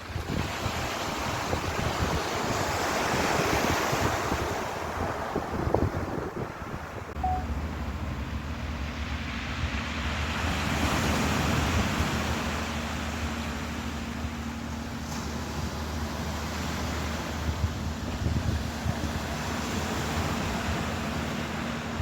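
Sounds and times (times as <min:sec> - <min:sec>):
wind on microphone: 0:00.0 - 0:12.9, 0:15.8 - 0:22.0
ocean waves washing: 0:00.0 - 0:22.0
low motor drone: 0:07.2 - 0:22.0.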